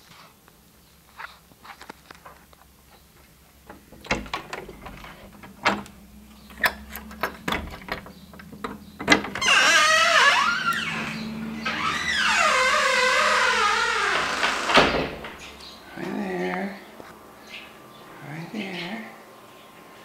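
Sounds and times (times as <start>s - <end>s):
door knocks and clicks: 3.7s - 15.6s.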